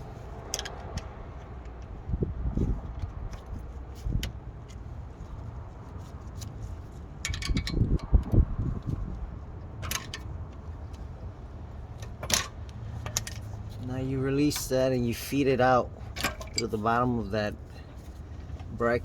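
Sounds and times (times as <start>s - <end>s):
metal tools clinking: 16.0s - 17.0s.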